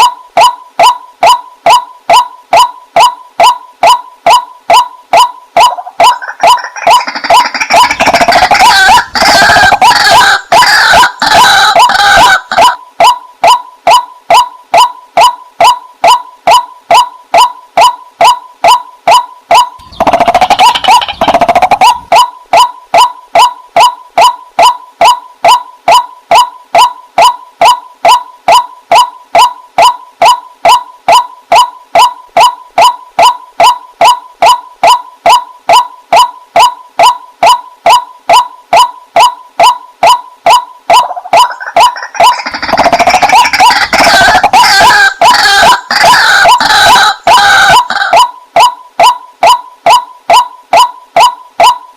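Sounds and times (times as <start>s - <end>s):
bird calling rapidly: 0.0s - 13.2s, 19.5s - 23.2s, 40.9s - 48.7s.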